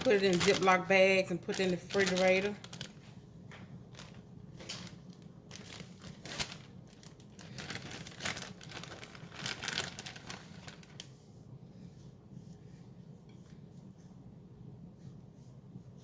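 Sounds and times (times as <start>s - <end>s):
plastic bag crinkling: 0.0s - 3.1s, 3.7s - 11.1s.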